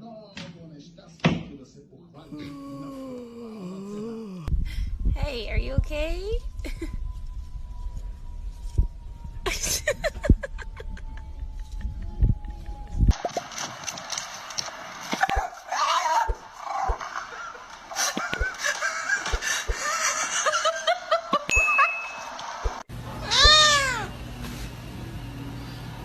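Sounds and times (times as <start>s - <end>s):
cat long meow: 23.2s - 24.1s.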